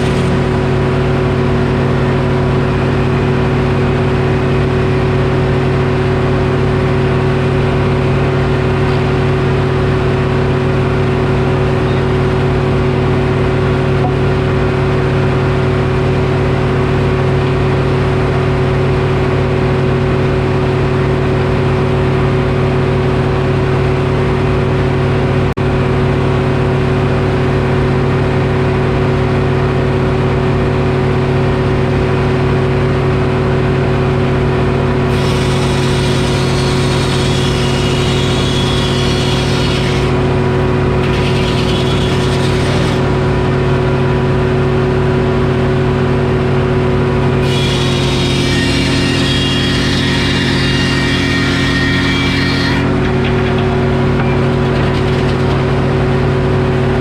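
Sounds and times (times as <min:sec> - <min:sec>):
saw whining through log: 0:00.0 - 0:12.6, 0:35.0 - 0:43.7, 0:47.2 - 0:57.0
diesel engine droning: 0:00.0 - 0:57.0.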